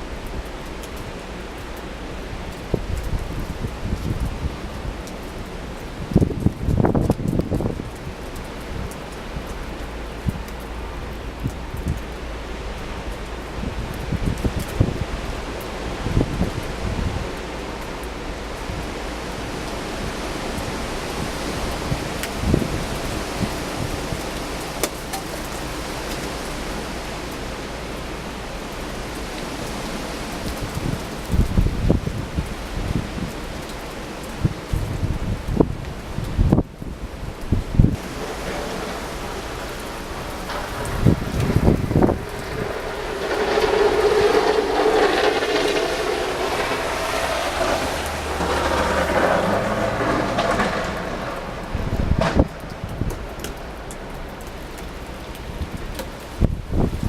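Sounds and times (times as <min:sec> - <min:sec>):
wind buffeting microphone: 0:00.0 - 0:57.0
wind gust rushing through trees: 0:13.5 - 0:53.8
blizzard wind hissing: 0:37.6 - 0:52.2.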